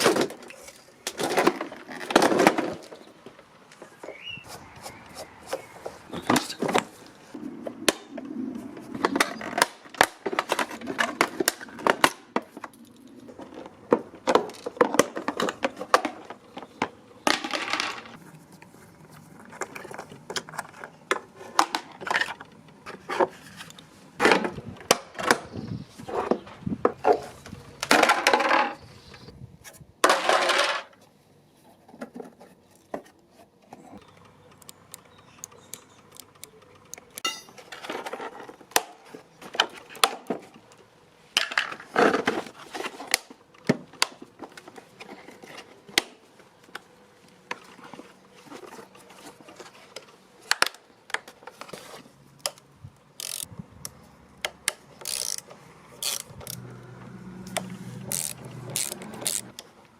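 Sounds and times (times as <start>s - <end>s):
metal tools clinking and clattering: 37.2s - 38.2s.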